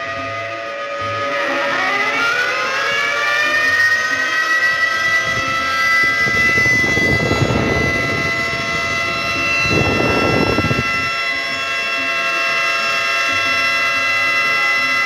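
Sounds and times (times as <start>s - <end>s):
warning siren steady chord: 0.0s - 15.0s
low rushing noise: 4.2s - 11.6s.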